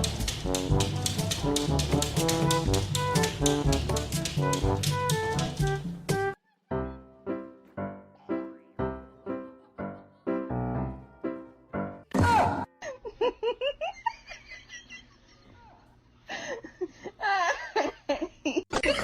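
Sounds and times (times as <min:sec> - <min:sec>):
light piano music: 0:00.0 - 0:12.1.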